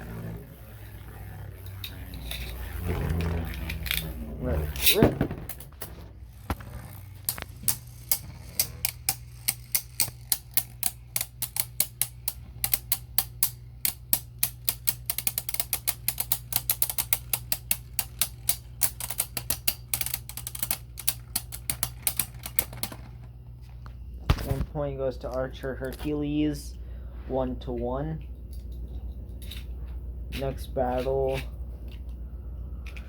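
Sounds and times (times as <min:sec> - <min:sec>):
steady low hum: 0:00.0 - 0:33.0
spinning tops clacking together: 0:00.7 - 0:23.2.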